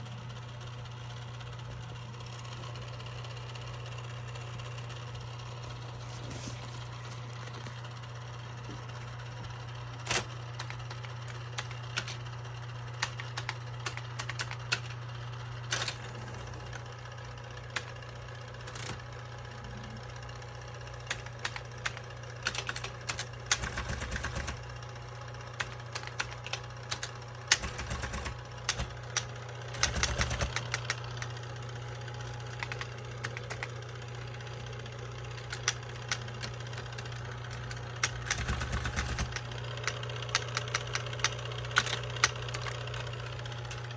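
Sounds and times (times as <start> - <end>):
electric typewriter motor humming: 8.6 - 43.9
typewriter keys clacking: 10.1 - 12.2, 13.0 - 15.0, 15.7 - 16.1, 18.7 - 19.0, 21.0 - 24.6, 25.6 - 31.4, 32.2 - 33.8, 35.3 - 43.9.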